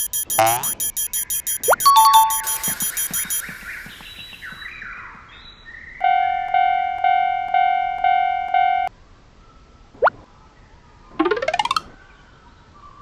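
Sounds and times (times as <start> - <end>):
railroad crossing bell ringing: 6.0 - 8.9.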